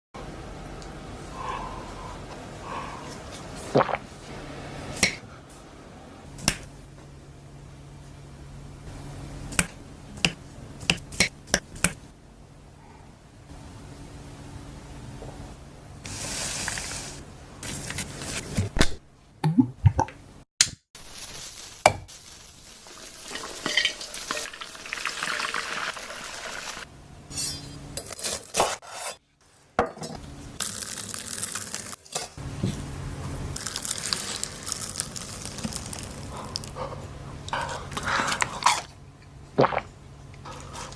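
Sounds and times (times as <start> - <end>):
food sizzling: 21.0 - 26.9, 30.6 - 32.0, 33.6 - 36.3
utensils clinking and scraping pan: 23.0 - 24.6.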